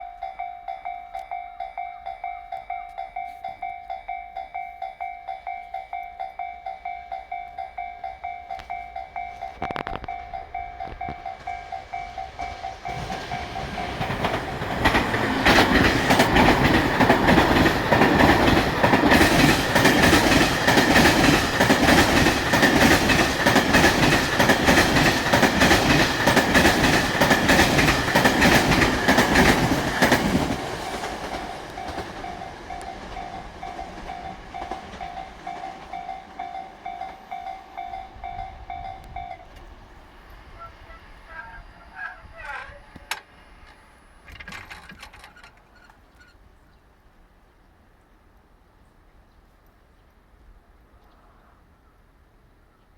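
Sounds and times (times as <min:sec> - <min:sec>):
level-crossing bell ringing: 0:00.0 - 0:14.6, 0:31.0 - 0:39.6
train wheels clattering over rail joints: 0:08.6 - 0:37.4, 0:42.4 - 0:46.4.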